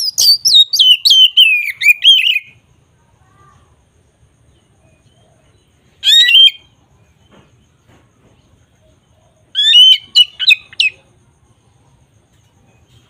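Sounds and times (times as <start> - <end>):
bird shrill chirping calls: 0.0 - 3.6, 4.5 - 7.4, 8.8 - 11.2.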